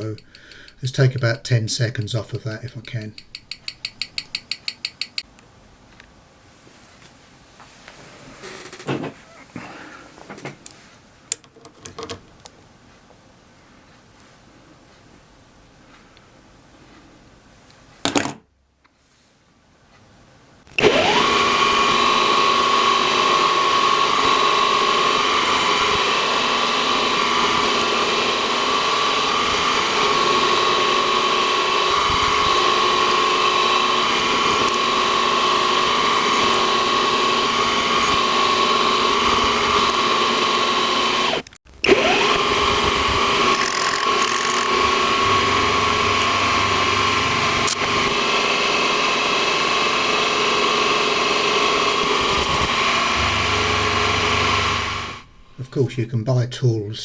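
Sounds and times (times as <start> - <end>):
power tool motor whining: 0.0 - 1.6, 2.4 - 4.4, 20.8 - 55.7.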